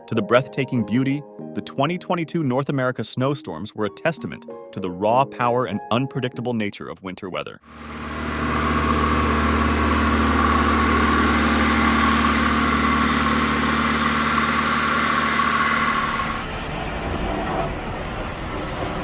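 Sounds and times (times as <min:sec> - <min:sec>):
vehicle engine running: 0:07.7 - 0:19.0.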